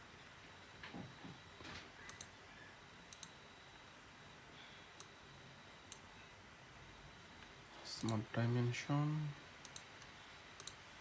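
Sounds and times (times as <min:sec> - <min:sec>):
faint steady hiss: 0:01.5 - 0:11.0
computer mouse clicking: 0:02.1 - 0:02.3, 0:03.1 - 0:03.4, 0:09.6 - 0:10.8.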